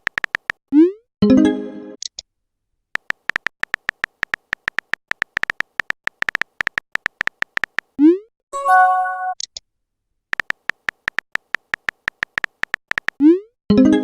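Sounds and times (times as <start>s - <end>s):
phone keyboard clicks: 0.0s - 0.6s, 3.0s - 8.0s, 10.3s - 13.2s
message chime: 8.6s - 9.4s.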